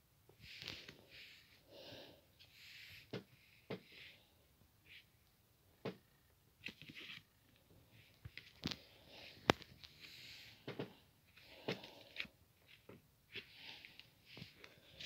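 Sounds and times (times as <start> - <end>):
soft rustling or breathy hisses: 0.4 - 5.2, 7.9 - 12.3.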